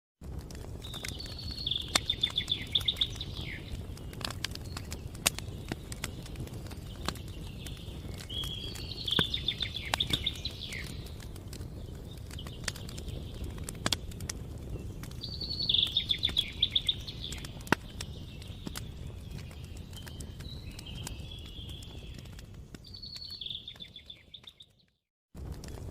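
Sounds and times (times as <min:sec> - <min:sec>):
wood fire crackling and popping: 0:00.2 - 0:25.9
songbird trilling: 0:01.2 - 0:03.7, 0:08.3 - 0:11.0, 0:15.3 - 0:17.6.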